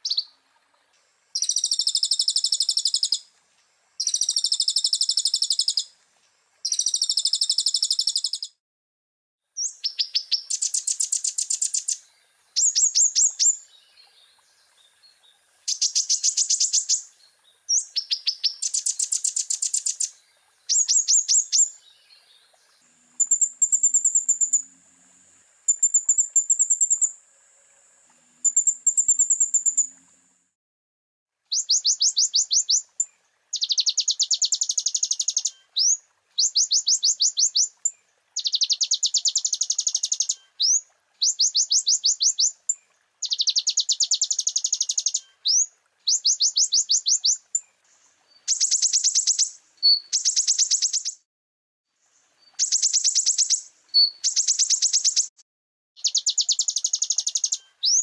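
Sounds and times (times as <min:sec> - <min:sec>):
sunbird chattering trills: 0:01.4 - 0:03.2, 0:04.0 - 0:05.8, 0:06.7 - 0:08.5, 0:23.2 - 0:24.6, 0:56.0 - 0:58.0.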